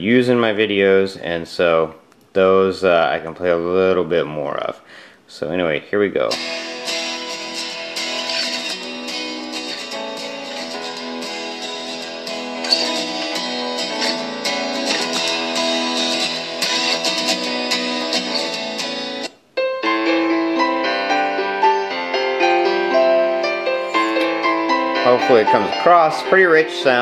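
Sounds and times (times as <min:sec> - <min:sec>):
acoustic piano music: 0:06.3 - 0:27.0
strummed guitar music on speaker: 0:06.3 - 0:27.0.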